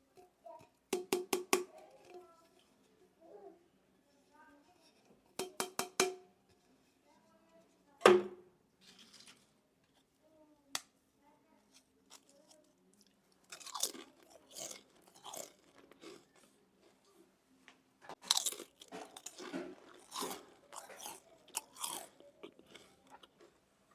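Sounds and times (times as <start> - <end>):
chips crunching in a grinder: 13.4 - 17.0, 18.2 - 23.6.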